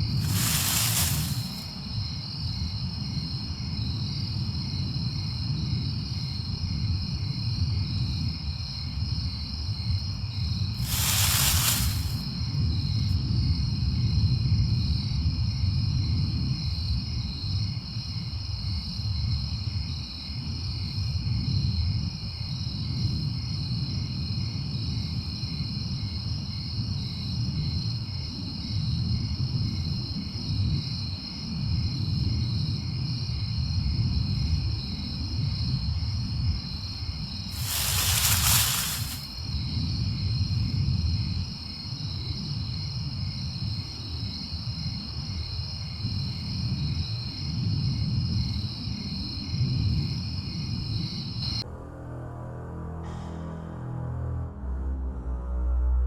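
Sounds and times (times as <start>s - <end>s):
short hiss: 0.1s - 1.7s, 10.8s - 12.3s, 37.5s - 39.4s.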